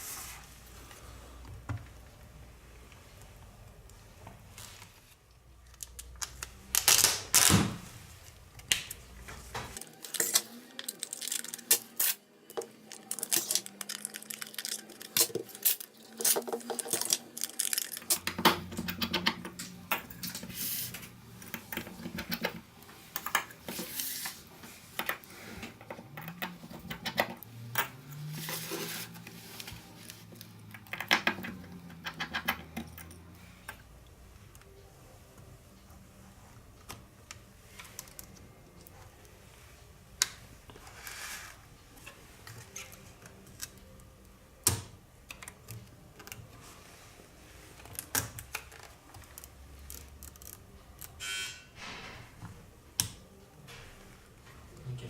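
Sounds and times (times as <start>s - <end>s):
tools and parts clicking: 9.8s - 24.2s, 30.4s - 33.8s, 47.8s - 51.2s.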